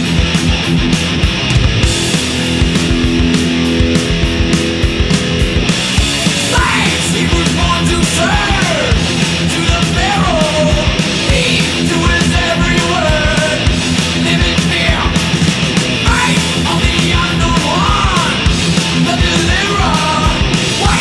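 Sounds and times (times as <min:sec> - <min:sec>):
heavy metal music: 0:00.0 - 0:21.0
pounding drums: 0:00.0 - 0:21.0
sustained guitar: 0:00.0 - 0:21.0
shouted singing vocal: 0:06.0 - 0:21.0.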